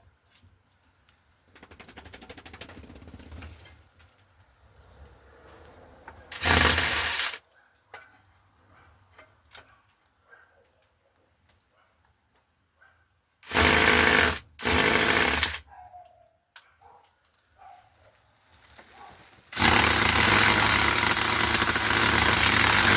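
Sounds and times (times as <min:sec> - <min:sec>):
electric drill running: 0:06.3 - 0:07.4, 0:13.4 - 0:15.6, 0:19.5 - 0:22.9.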